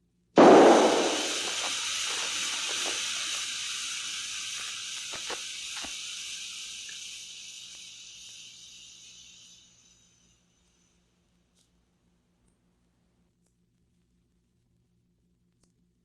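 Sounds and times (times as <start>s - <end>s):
tire blowout bang: 0.4s - 5.9s
air hissing out of tire: 0.4s - 10.4s.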